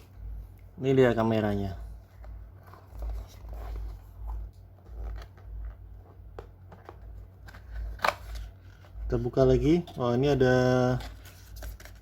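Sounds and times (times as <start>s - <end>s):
light rustles of packaging: 1.5s - 12.0s.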